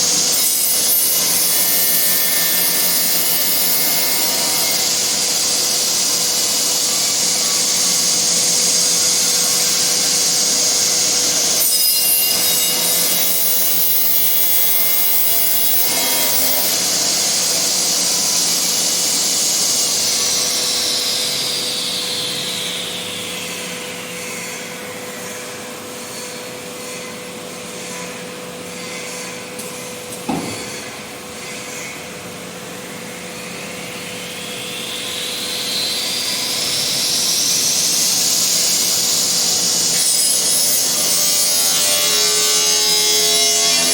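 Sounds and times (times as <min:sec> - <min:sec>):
router cutting wood: 0:00.0 - 0:22.9, 0:34.8 - 0:43.9
knock: 0:30.3 - 0:30.8.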